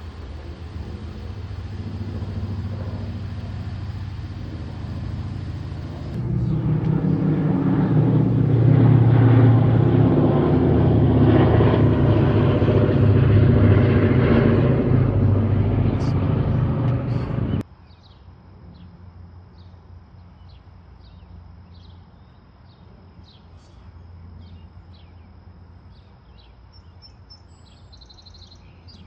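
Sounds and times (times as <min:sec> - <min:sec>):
aircraft engine humming: 0:00.0 - 0:17.6.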